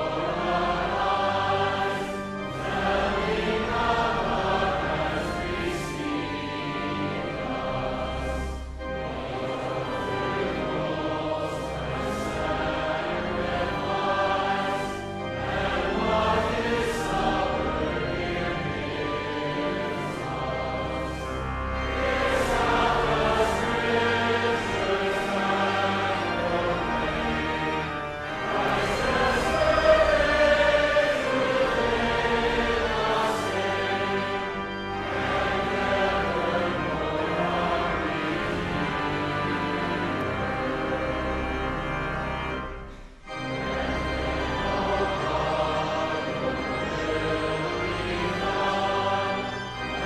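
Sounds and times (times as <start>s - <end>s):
choir singing held chords: 0.0s - 50.0s.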